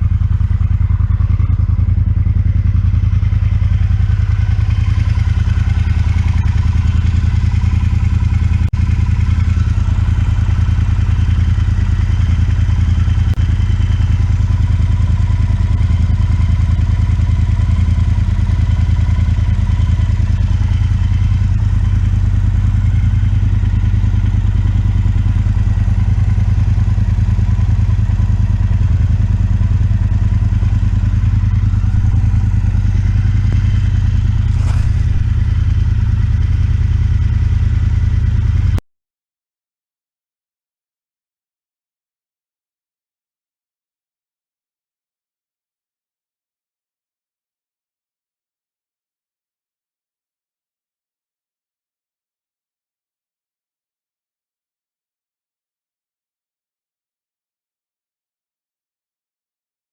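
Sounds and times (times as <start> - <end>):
motorcycle engine idling: 0.0 - 38.8.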